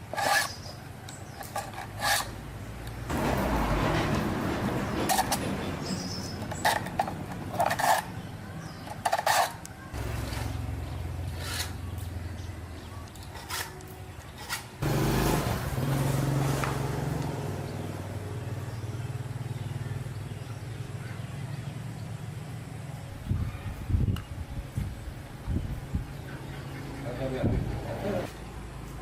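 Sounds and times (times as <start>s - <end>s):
chainsaw engine running: 14.8s - 17.4s.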